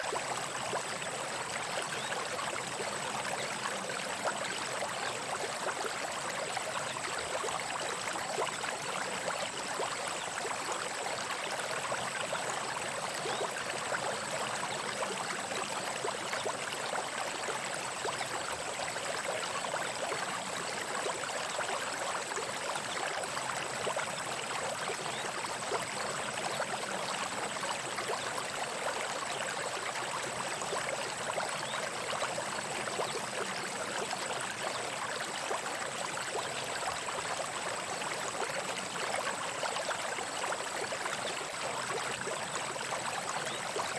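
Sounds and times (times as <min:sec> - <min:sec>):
brook babbling over stones: 0:00.0 - 0:43.9.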